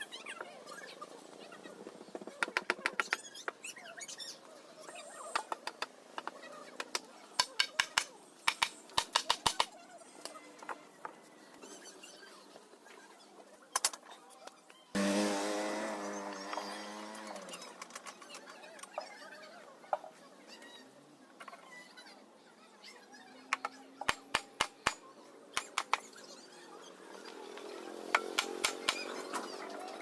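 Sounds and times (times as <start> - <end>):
sharp taps and knocks on wood: 5.4 - 9.7, 25.6 - 26.1.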